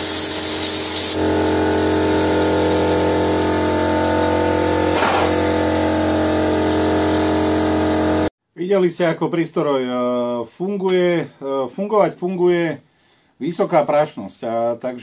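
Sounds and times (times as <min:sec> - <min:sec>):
hiss of air: 0:00.0 - 0:01.2
air compressor running: 0:00.0 - 0:08.3.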